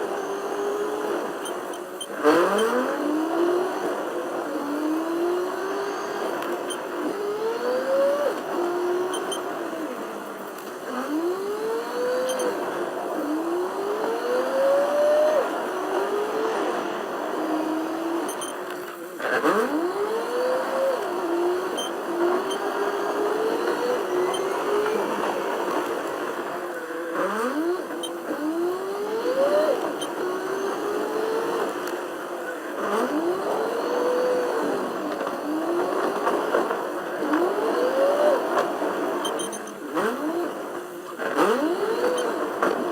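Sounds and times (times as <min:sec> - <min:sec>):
car engine accelerating: 0:00.0 - 0:42.9.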